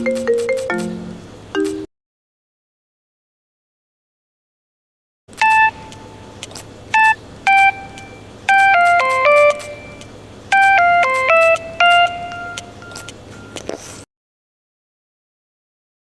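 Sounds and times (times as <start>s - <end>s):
bell-like phone ringtone: 0.0s - 1.0s, 5.4s - 5.9s, 7.0s - 13.6s.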